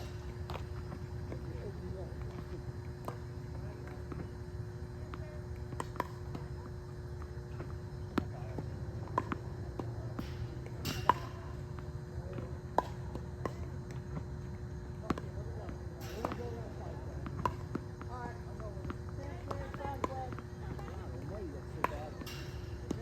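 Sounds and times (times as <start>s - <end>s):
steady low hum: 0.0s - 23.0s
tennis balls launched and struck: 9.1s - 13.6s, 16.0s - 18.1s.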